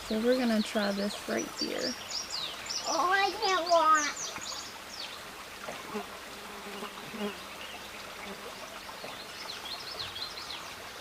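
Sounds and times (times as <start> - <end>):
quiet outdoor background noise: 0.0 - 11.0
fly buzzing: 5.6 - 7.5.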